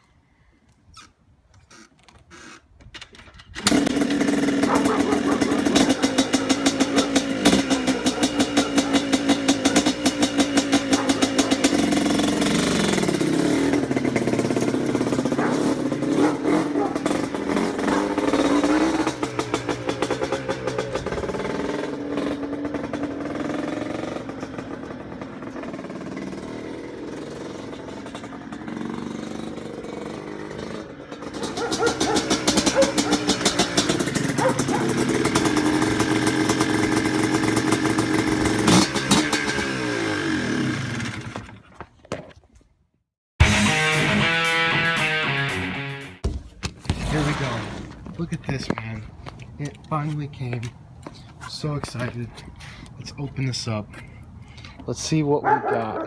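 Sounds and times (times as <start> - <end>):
atv engine revving: 3.6 - 41.6.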